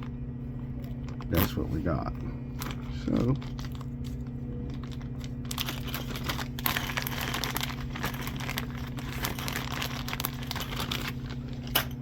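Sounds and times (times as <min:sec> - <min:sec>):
plastic packaging crinkling: 0:02.5 - 0:12.0.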